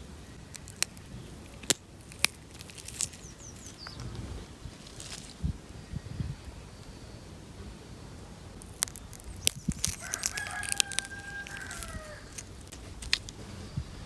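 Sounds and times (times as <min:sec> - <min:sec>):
fruit being crushed by hand: 0:00.4 - 0:04.1, 0:08.6 - 0:13.4
rooster crowing: 0:10.0 - 0:12.4.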